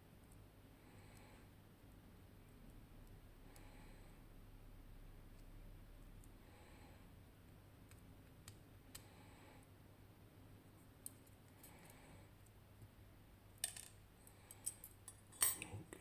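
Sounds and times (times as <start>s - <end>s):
faint clicks of lock parts: 11.0s - 13.0s, 13.6s - 16.0s
metallic clicks and clinks: 13.6s - 15.8s.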